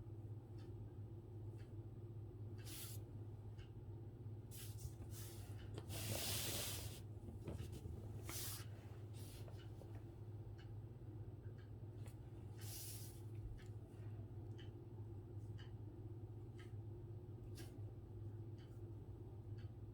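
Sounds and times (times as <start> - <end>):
steady low hum: 0.0 - 19.9
brush swishing across paper: 4.6 - 7.0, 8.3 - 9.4, 12.6 - 13.2.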